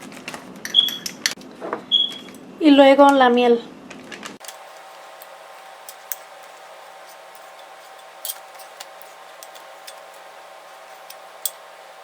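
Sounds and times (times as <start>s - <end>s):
faint steady hum: 4.4s - 12.0s.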